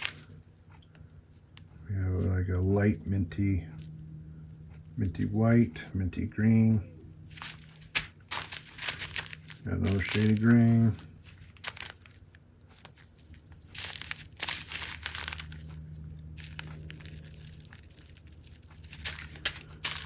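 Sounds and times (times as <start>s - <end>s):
plastic bags crinkling: 0.0s - 0.4s, 7.3s - 20.0s.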